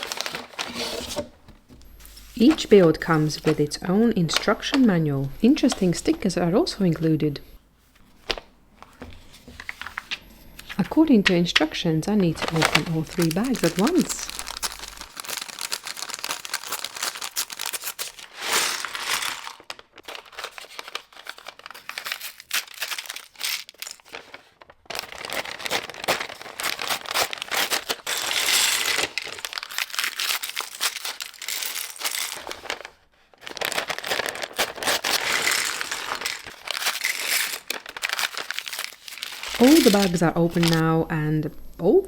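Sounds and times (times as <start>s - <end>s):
plastic bags tearing and crinkling: 0.0s - 1.2s, 12.2s - 40.8s.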